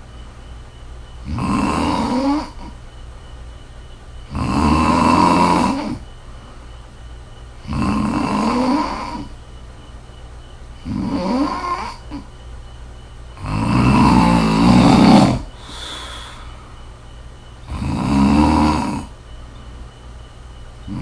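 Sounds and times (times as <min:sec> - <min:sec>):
woman snoring: 0:01.2 - 0:02.8, 0:04.3 - 0:06.0, 0:07.6 - 0:09.4, 0:10.8 - 0:12.3, 0:13.4 - 0:16.7, 0:17.6 - 0:19.2.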